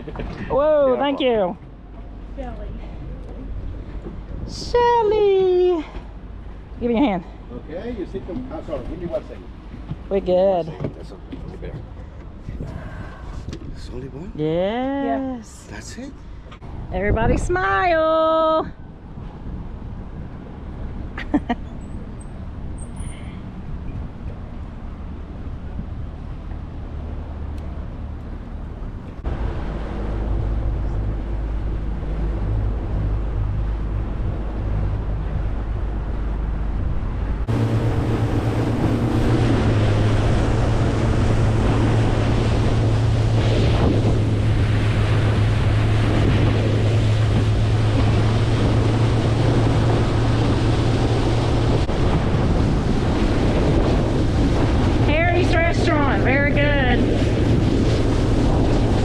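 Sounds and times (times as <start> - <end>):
wind buffeting the microphone: 0.0 - 15.0, 15.7 - 59.0
water rushing past: 15.1 - 59.0
small boat motor running: 20.5 - 51.9.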